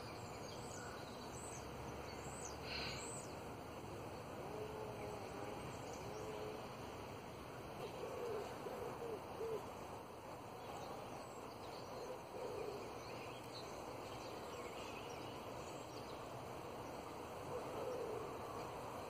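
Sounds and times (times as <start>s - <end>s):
faint songbird chirps: 0.0s - 19.0s
dove cooing: 7.8s - 9.9s, 11.9s - 13.0s, 17.4s - 19.0s.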